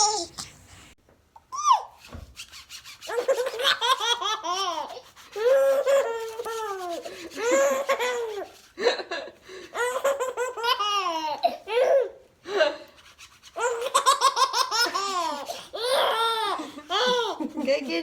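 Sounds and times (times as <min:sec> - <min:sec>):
baby laughing: 0:00.0 - 0:00.6, 0:03.1 - 0:09.0, 0:09.7 - 0:12.2, 0:13.6 - 0:18.0.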